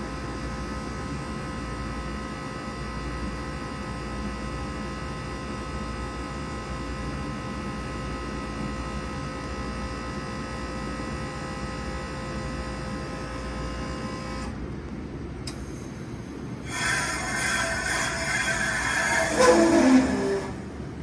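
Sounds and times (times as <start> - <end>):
heat pump humming: 15.4 - 21.0.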